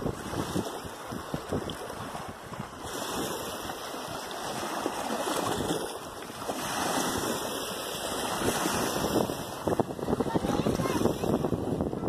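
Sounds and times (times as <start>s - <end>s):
rushing water: 0.0s - 12.0s
wind on microphone: 0.0s - 12.0s.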